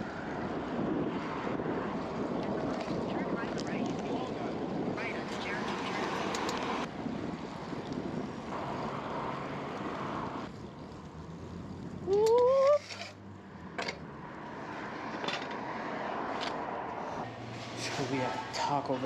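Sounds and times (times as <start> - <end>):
wind noise: 0.0 - 10.5
wet road noise: 0.0 - 19.0
sharp clicks: 6.3 - 6.7.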